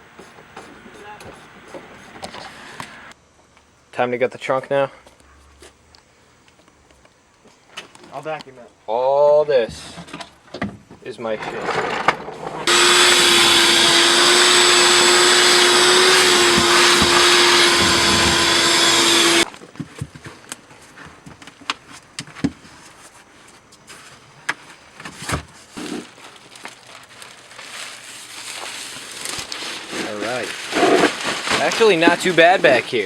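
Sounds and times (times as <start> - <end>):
vacuum cleaner whine: 12.6 - 19.5.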